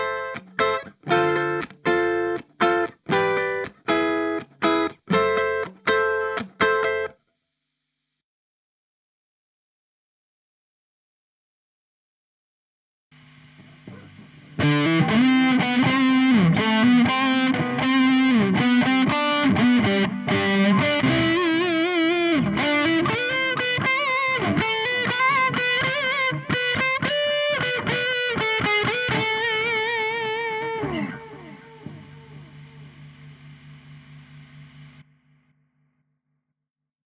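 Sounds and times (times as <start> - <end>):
distorted electric guitar lead: 0.0 - 7.2, 13.2 - 35.6
steady hum and hiss: 13.2 - 35.0.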